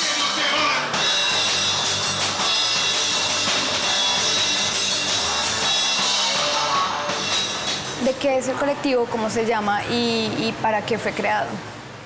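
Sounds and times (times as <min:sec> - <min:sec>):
drum kit beat: 0:00.0 - 0:08.6
guitar: 0:00.0 - 0:11.6.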